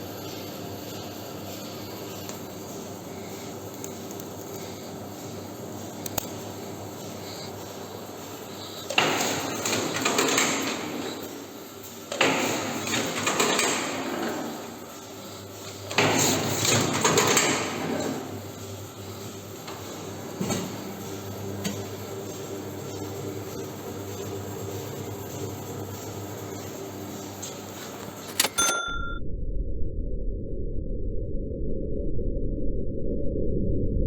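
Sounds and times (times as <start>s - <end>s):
steady machine hum: 0.0s - 34.0s
sharp machine clack: 7.4s - 15.0s, 28.2s - 29.2s.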